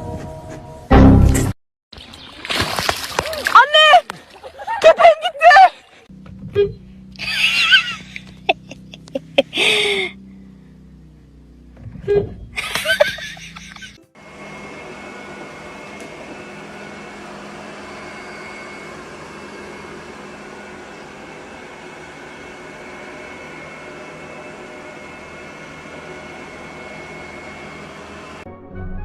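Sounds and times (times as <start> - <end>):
steady machine hum: 6.0 - 28.4.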